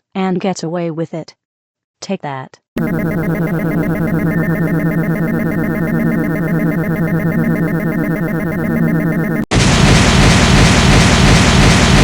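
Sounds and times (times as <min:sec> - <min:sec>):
synthesized electronic buzz: 0:02.8 - 0:09.5.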